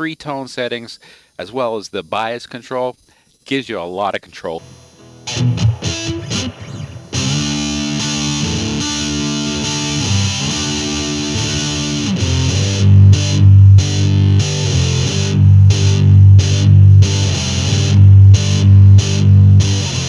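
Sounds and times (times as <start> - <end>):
fuzzed electric guitar: 4.6 - 20.0.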